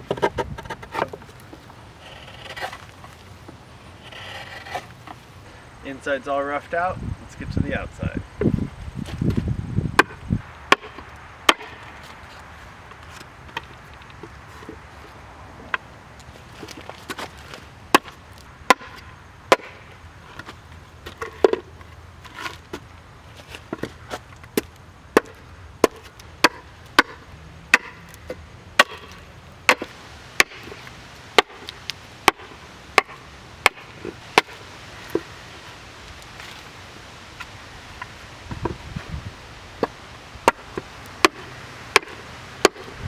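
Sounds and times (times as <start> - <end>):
axe chopping wood: 10.0 - 12.1, 17.9 - 19.9, 21.1 - 21.7, 23.7 - 35.4, 39.8 - 43.0.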